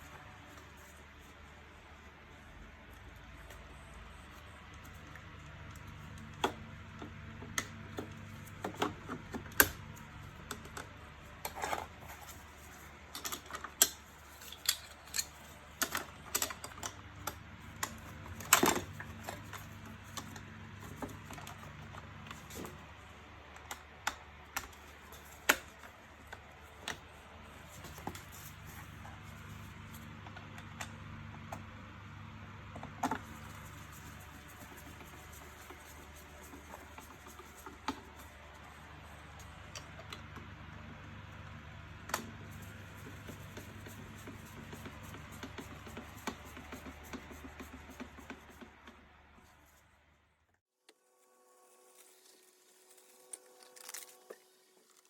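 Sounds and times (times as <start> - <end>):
plastic and metal parts clicking: 13.1 - 21.7.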